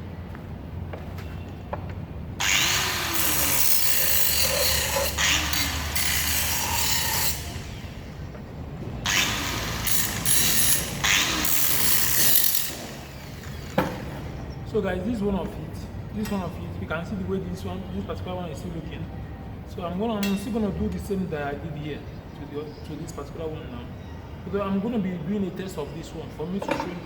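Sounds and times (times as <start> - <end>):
tool rasping through material: 2.4 - 7.6, 9.1 - 13.8.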